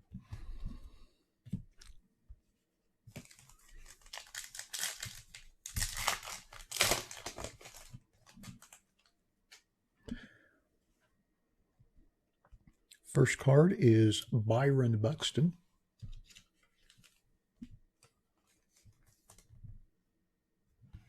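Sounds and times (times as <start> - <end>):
wrapper tearing and crinkling: 3.2 - 9.1.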